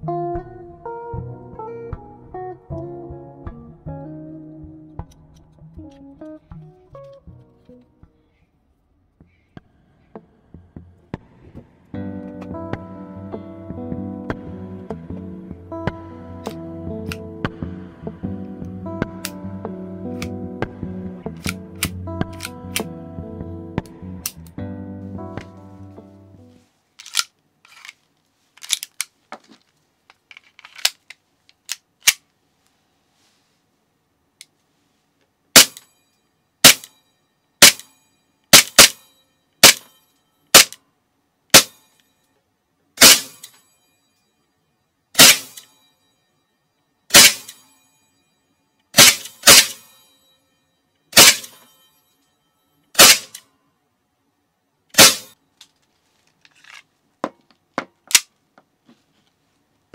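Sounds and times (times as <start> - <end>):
handling clicks: 21.4 - 22.9, 27.0 - 28.0, 28.6 - 32.2
airsoft pistol shots: 35.6 - 35.8, 36.6 - 36.9, 37.6 - 37.9, 38.5 - 39.0, 39.6 - 39.8, 40.5 - 40.8, 41.5 - 41.7, 43.0 - 43.5, 45.2 - 45.6, 47.1 - 47.6, 49.0 - 49.9, 51.2 - 51.6, 53.0 - 53.4, 55.0 - 55.4.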